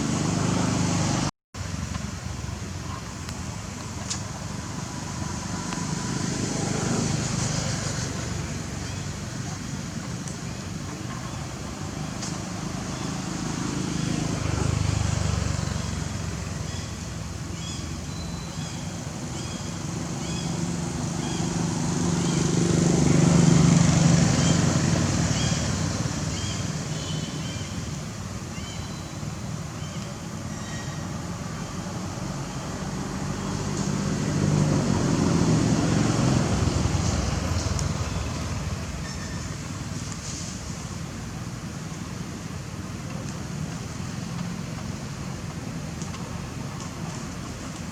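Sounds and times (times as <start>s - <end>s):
passing vehicle engine hum: 0.0s - 1.3s, 4.3s - 9.9s, 10.6s - 16.9s, 18.9s - 27.8s, 30.2s - 41.0s.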